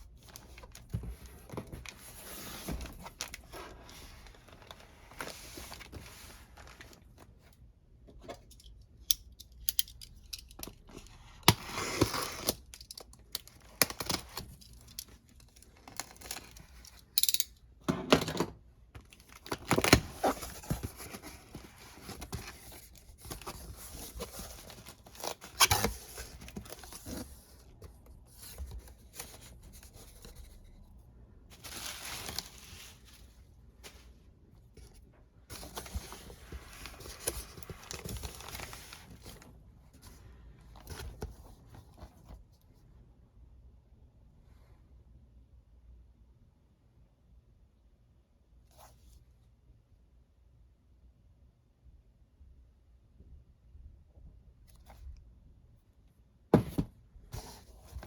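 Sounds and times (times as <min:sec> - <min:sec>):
knocks of handling boxes: 0:56.5 - 0:57.6.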